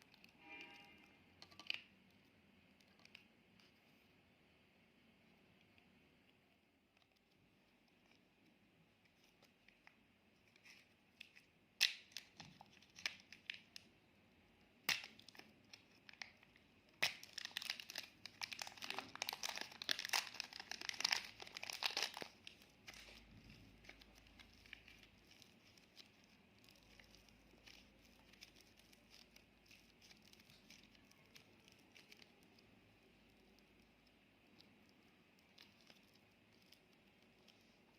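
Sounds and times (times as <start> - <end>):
slime crackling and popping: 10.6 - 13.9, 14.6 - 37.9.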